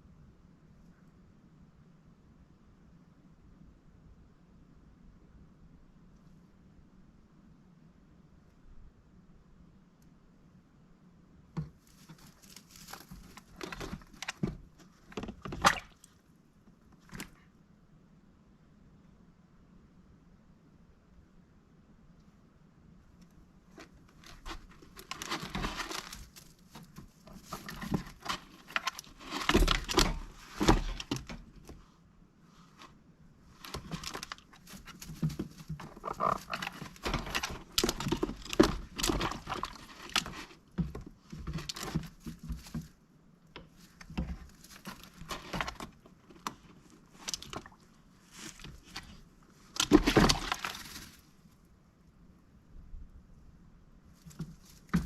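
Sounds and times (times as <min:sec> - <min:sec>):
duck rustling and pattering: 0:11.6 - 0:16.0, 0:23.7 - 0:31.8, 0:32.5 - 0:43.0, 0:43.6 - 0:51.4.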